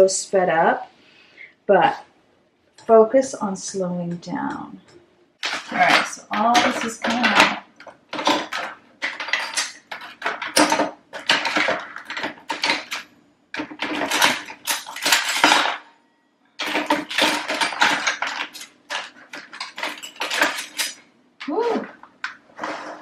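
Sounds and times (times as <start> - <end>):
cutlery clattering: 5.4 - 15.9, 16.6 - 21.1.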